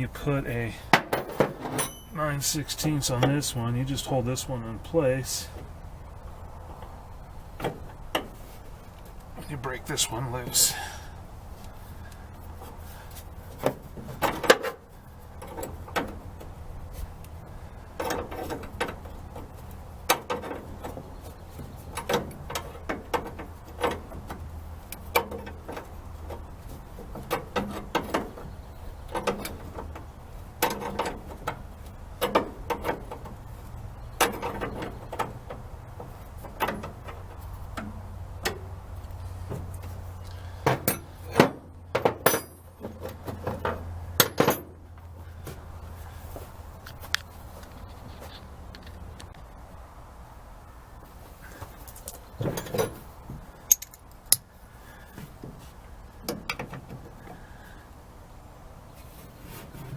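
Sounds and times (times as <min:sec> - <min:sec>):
wrenches clicking on metal: 0:53.7 - 0:54.5.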